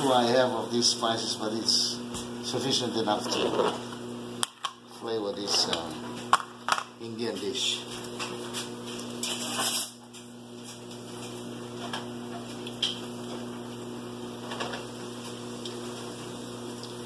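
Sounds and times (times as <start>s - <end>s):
oil sizzling: 12.5s - 17.0s.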